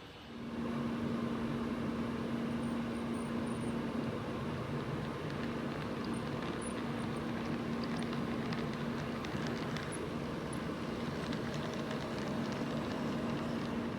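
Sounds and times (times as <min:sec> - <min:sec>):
model locomotive motor hum: 0:01.4 - 0:13.9
wheels clicking on track: 0:03.5 - 0:13.9.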